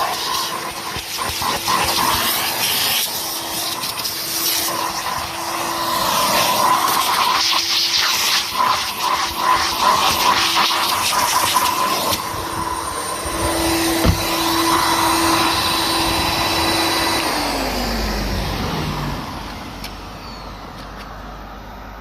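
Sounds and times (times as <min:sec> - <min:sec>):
vacuum cleaner whining: 0:00.0 - 0:22.0
knock: 0:14.0 - 0:14.3.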